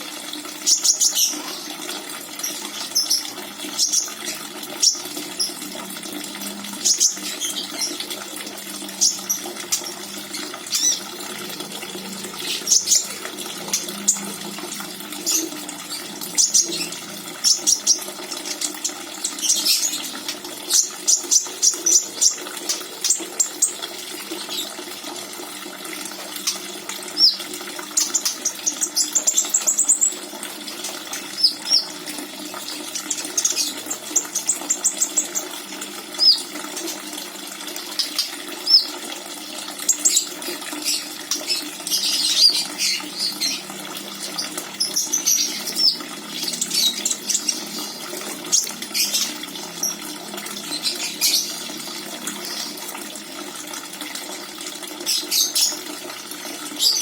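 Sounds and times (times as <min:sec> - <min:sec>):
bird chirping and trilling: 0:00.0 - 0:24.9, 0:26.1 - 0:37.2, 0:37.8 - 0:39.1, 0:39.7 - 0:52.9, 0:55.0 - 0:55.9, 0:56.7 - 0:57.0
running water: 0:00.0 - 0:57.0.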